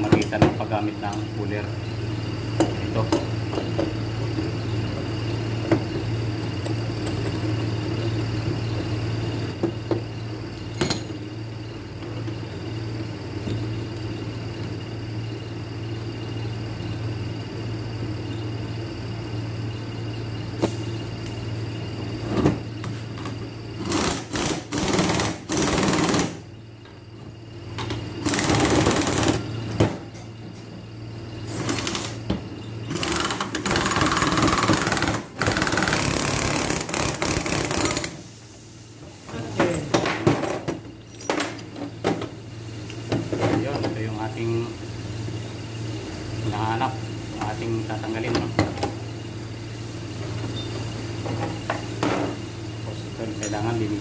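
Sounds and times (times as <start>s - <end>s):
steady low hum: 0.0s - 54.0s
power tool running: 23.8s - 26.4s, 28.2s - 29.5s, 32.9s - 38.2s.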